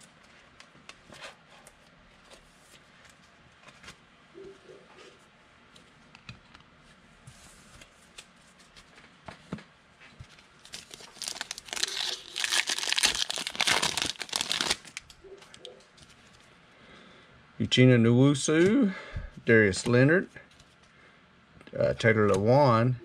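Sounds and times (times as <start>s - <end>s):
wrapper tearing and crinkling: 10.6s - 15.1s.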